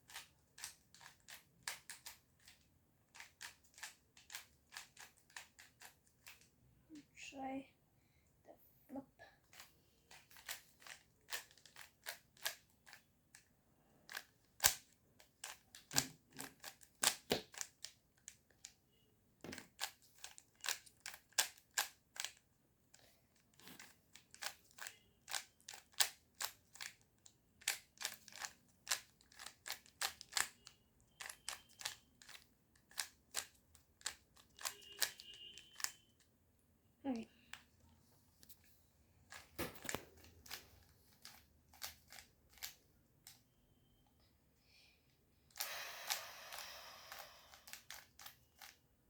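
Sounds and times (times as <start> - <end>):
puzzle cube plastic clicks: 0.0 - 6.6, 9.4 - 18.8, 19.4 - 36.0, 39.3 - 43.4, 45.5 - 48.8.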